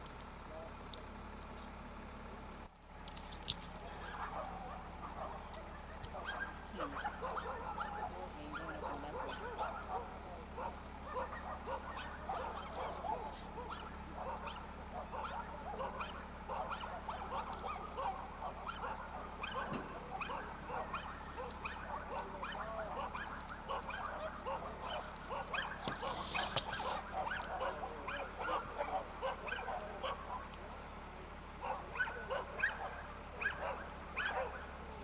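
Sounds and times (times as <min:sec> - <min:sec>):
dogs barking: 0:03.8 - 0:35.0.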